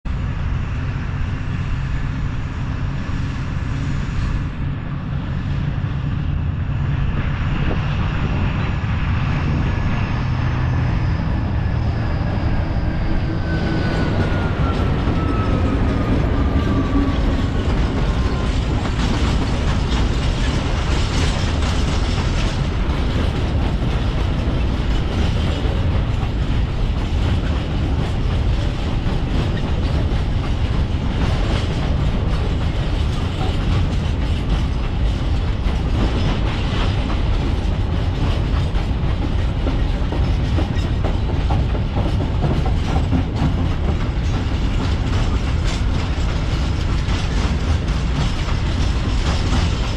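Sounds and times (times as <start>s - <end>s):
rumble of train wagons: 0.0s - 49.9s
wheels clacking over rail joints: 10.2s - 49.9s.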